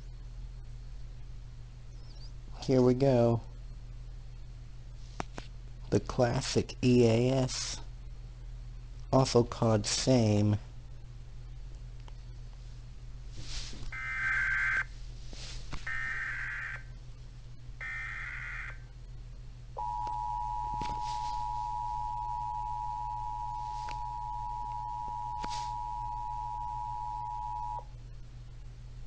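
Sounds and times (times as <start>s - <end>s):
two-tone attention signal: 19.8s - 27.8s.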